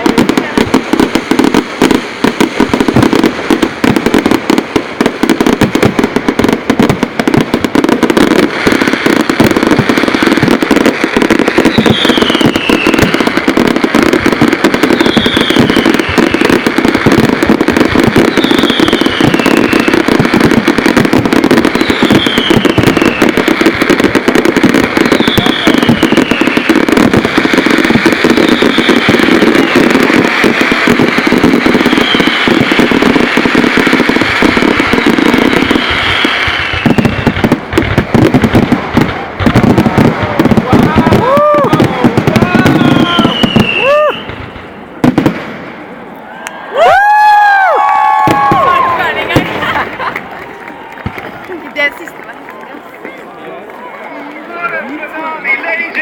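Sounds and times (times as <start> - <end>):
fireworks bangs and crackles: 0.0 - 56.0
falling whistle: 15.0 - 16.0, 31.9 - 32.4.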